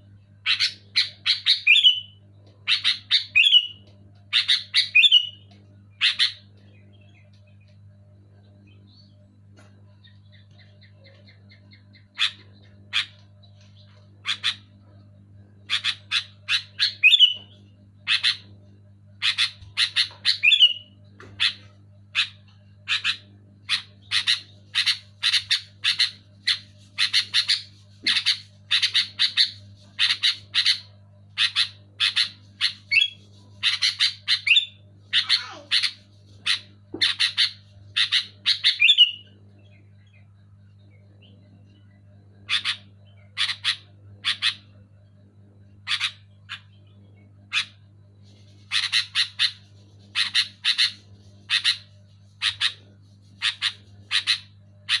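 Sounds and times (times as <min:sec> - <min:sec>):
steady low hum: 0:00.0 - 0:55.0.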